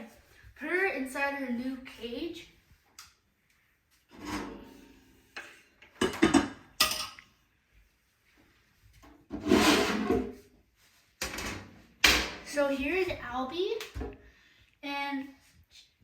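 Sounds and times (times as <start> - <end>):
scraping sliding sound: 4.1 - 5.0, 9.3 - 10.4.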